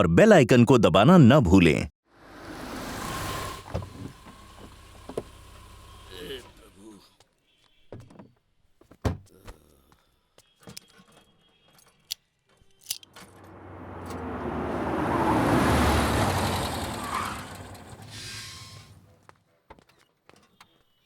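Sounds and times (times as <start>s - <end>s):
vehicle driving by: 2.1s - 6.8s, 13.1s - 19.2s.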